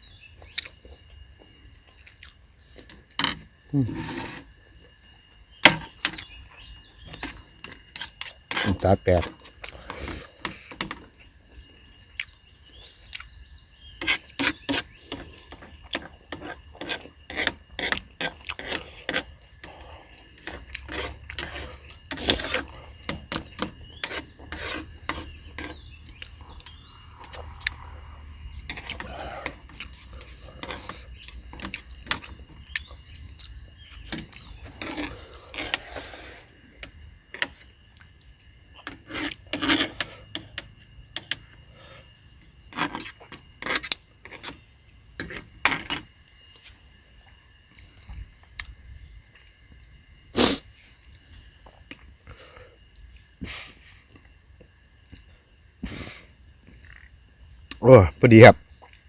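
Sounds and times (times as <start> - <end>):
close-up eating sounds: 1.9 - 4.5, 14.2 - 40.6.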